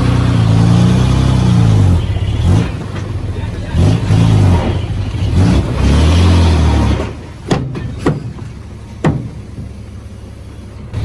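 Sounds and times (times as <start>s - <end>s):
heavy diesel engine running: 0.0s - 11.0s
sharp knocks: 7.4s - 9.8s.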